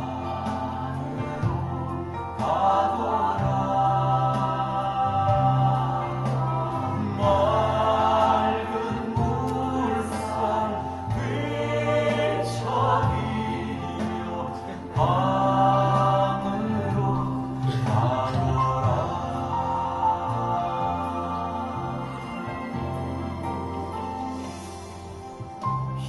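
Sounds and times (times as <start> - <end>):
choir-like voices singing: 0.0 - 26.0
sustained low accompaniment: 0.0 - 26.0.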